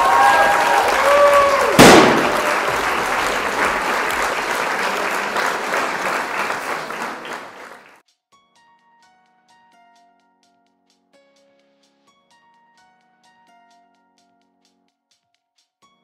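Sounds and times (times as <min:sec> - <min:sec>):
crowd applauding: 0:00.0 - 0:08.0
sudden loud hit: 0:01.8 - 0:02.8.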